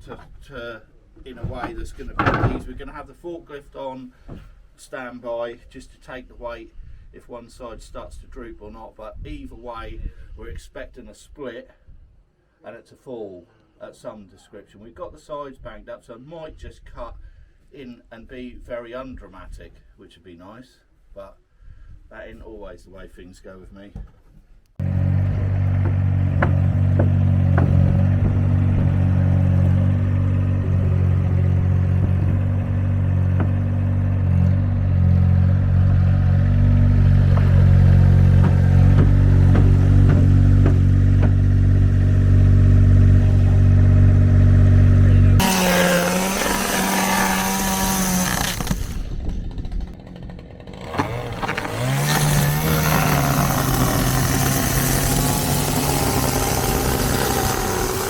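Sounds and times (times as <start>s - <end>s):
chainsaw cutting wood: 24.8s - 58.0s
engine running with clattering: 24.8s - 58.0s.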